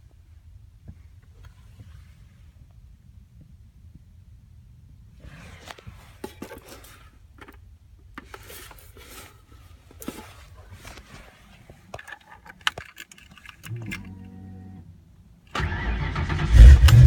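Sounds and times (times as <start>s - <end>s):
faint low hum: 0.0s - 17.0s
rustling and scraping: 5.2s - 14.3s.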